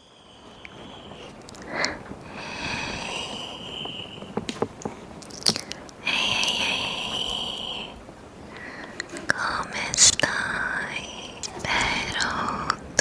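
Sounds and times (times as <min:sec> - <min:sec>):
wet tongue and lip smacks: 0:04.5 - 0:07.4, 0:11.4 - 0:12.4.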